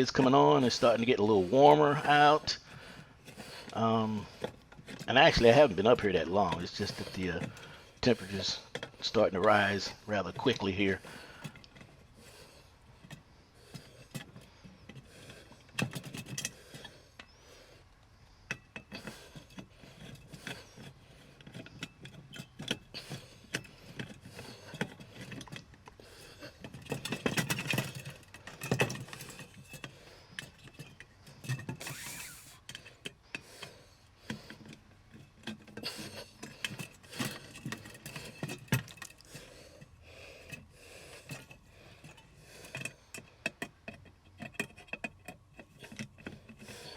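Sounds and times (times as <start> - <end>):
hand tools clicking and scraping: 0.0 - 46.9
metal parts clattering: 18.8 - 33.2, 34.3 - 39.3.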